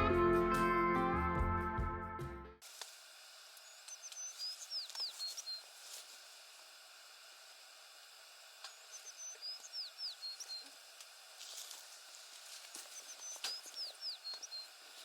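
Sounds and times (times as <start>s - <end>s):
songbird singing faintly: 3.6s - 5.7s, 8.6s - 10.8s, 12.7s - 15.0s.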